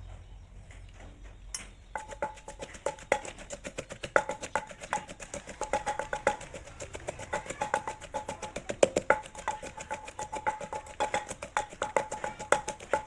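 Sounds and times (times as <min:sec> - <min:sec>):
pitched knocking notes: 0:01.9 - 0:13.0
wood block percussion music: 0:01.9 - 0:13.0.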